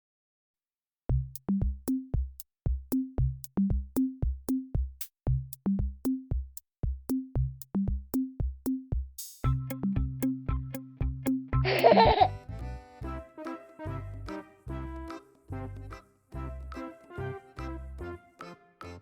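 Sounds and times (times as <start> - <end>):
electronic music with drum-machine beat: 5.6 - 12.4.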